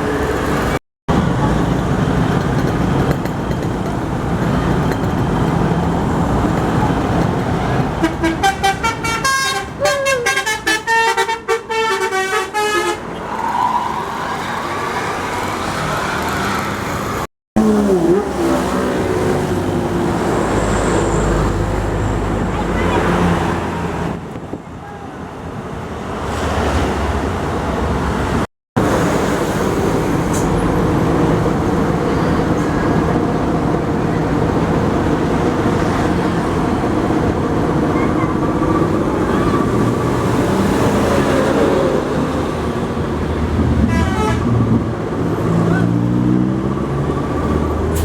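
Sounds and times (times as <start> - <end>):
buses passing: 0.0 - 48.0
bus horns tooting: 7.7 - 13.4, 43.6 - 44.8
bus engine revving: 12.4 - 24.5, 26.0 - 48.0.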